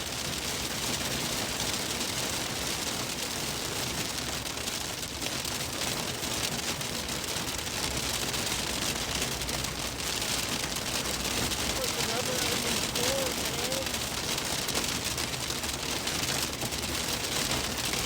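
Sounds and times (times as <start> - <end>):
hail and rain on car roof: 0.0 - 18.0
car road noise: 7.3 - 18.0.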